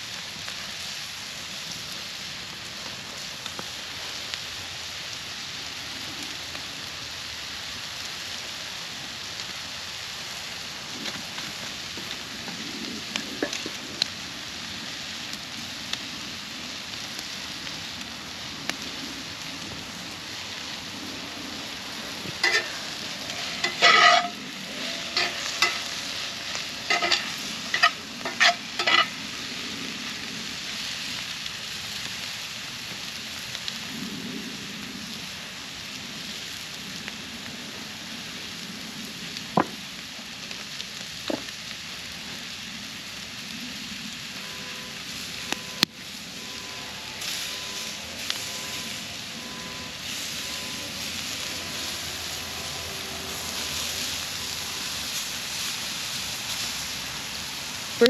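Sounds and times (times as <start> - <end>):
campfire crackles: 0.0 - 58.0
food sizzling on cast iron: 0.0 - 58.0
utensil clanking and scraping: 22.2 - 29.2, 50.0 - 55.3.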